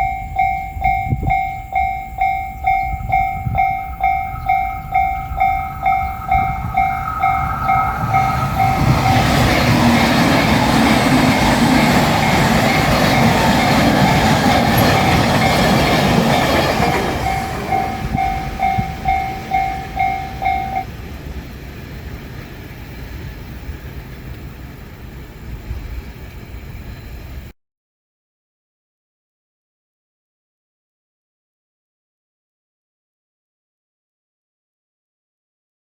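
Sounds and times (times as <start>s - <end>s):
level crossing warning bell: 0.0s - 20.9s
electric train passing: 0.0s - 27.5s.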